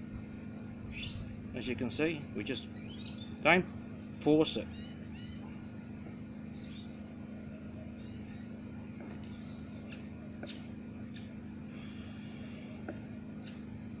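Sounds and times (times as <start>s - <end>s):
steady low hum: 0.0s - 14.0s
faint bird chirps: 0.9s - 1.3s, 2.8s - 3.4s, 4.7s - 5.6s, 6.5s - 7.0s.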